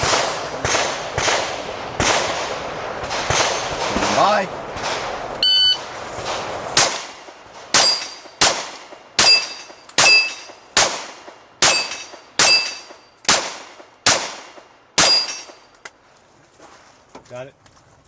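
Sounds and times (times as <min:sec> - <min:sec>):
pistol shots: 0:00.0 - 0:05.1, 0:06.3 - 0:15.6
steel plates ringing: 0:07.8 - 0:08.4, 0:09.2 - 0:10.6, 0:11.6 - 0:13.2, 0:15.0 - 0:15.7.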